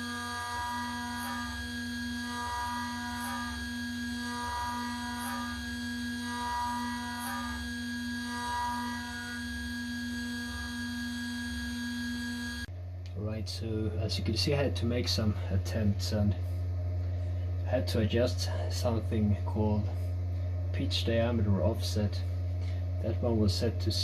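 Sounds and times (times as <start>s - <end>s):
axis motors whining: 0.0s - 12.7s
router spindle humming: 0.0s - 12.7s.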